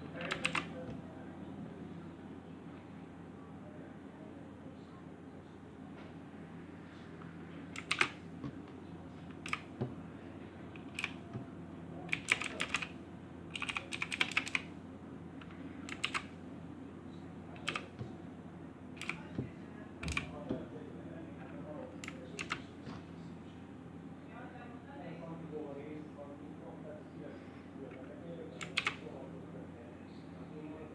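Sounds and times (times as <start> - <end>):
mechanical keyboard keystrokes: 0.2 - 0.7, 7.7 - 8.2, 9.3 - 9.7, 10.7 - 11.3, 12.1 - 14.7, 15.4 - 16.3, 17.6 - 18.1, 19.0 - 19.3, 20.0 - 20.4, 22.0 - 22.6, 28.6 - 29.0.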